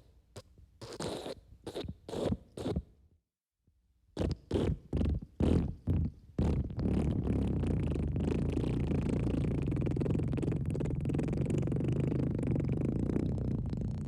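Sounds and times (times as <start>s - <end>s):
wet fart: 4.2s - 14.0s.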